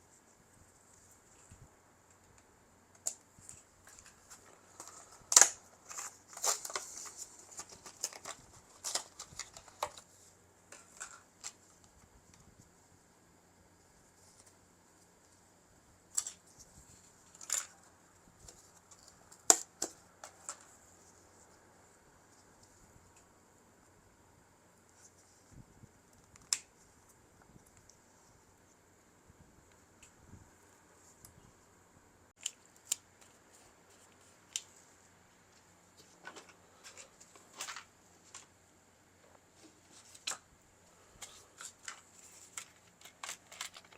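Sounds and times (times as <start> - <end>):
laptop parts rattling: 3.5 - 10.1, 41.2 - 43.9.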